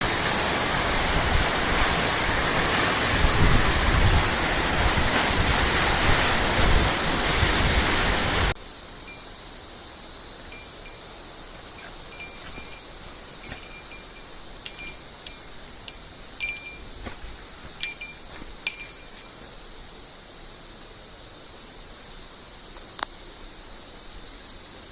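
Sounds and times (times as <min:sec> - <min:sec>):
waterfall rushing: 0:00.0 - 0:08.6
faint metallic chime tinkles: 0:09.1 - 0:09.3, 0:10.5 - 0:11.1, 0:11.8 - 0:17.0, 0:17.7 - 0:19.4.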